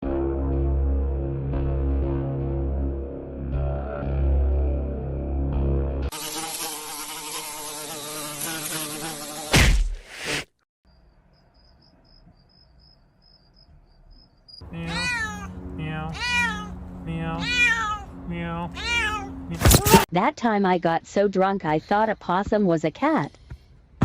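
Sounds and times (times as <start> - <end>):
music: 0.0 - 6.1
cat meowing: 14.7 - 18.1, 18.7 - 20.0.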